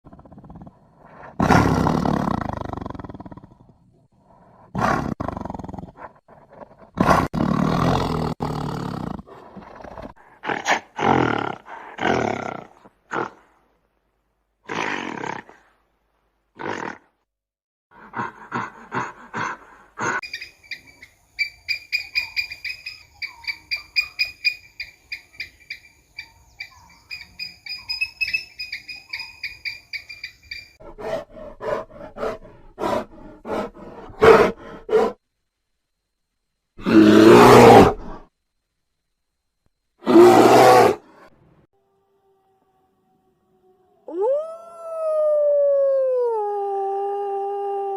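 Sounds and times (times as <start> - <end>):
animal roars: 36.8 - 38.3, 40.0 - 41.1.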